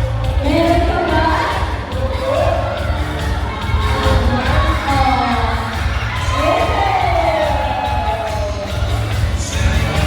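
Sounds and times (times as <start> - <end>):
crowd cheering and shouting: 0.0 - 10.0
party music with heavy bass: 0.0 - 10.0
long falling cheer: 1.8 - 9.7.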